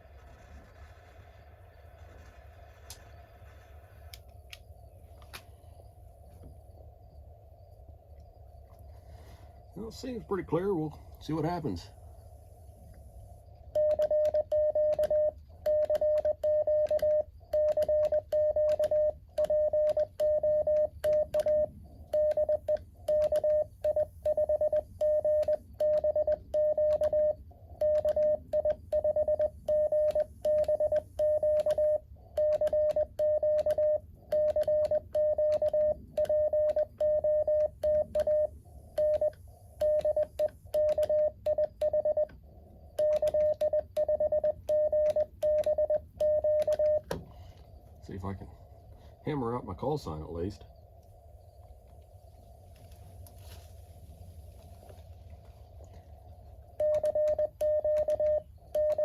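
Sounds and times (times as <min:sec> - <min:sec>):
morse code beeps: 0:13.7 - 0:47.2, 0:56.7 - 0:59.0.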